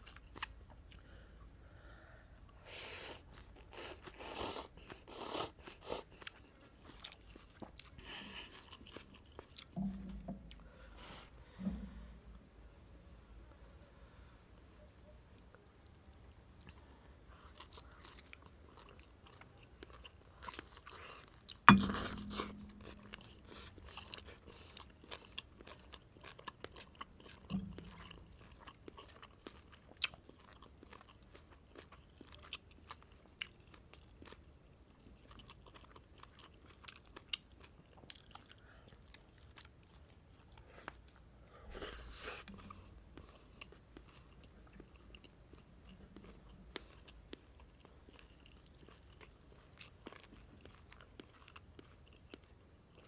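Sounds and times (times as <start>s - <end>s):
wet chewing and mouth clicks: 3.1s - 10.8s, 16.6s - 41.3s, 42.3s - 53.0s
sharp knock with low ring: 21.7s - 23.2s.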